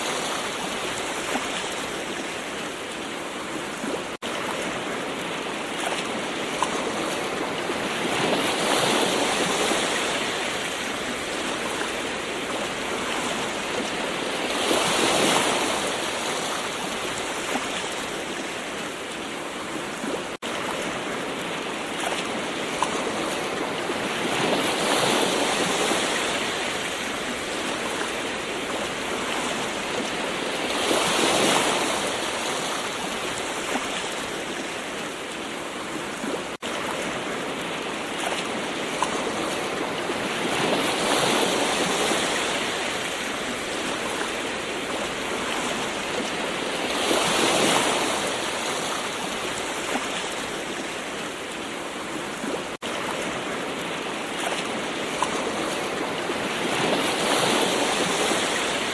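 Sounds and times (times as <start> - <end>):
ocean waves washing ashore: 0.0 - 58.9.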